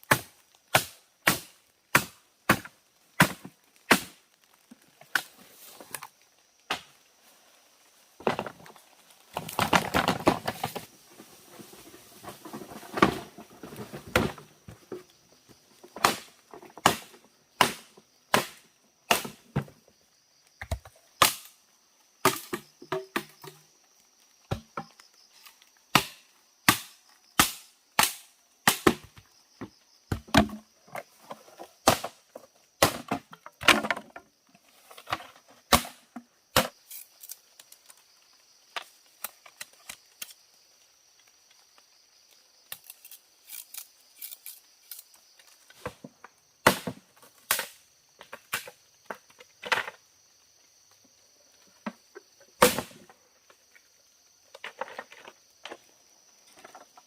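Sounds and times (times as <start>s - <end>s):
blade chopping wood: 0.0s - 4.2s, 16.0s - 19.4s, 25.9s - 29.2s, 32.8s - 34.0s, 35.7s - 36.0s, 46.6s - 47.8s.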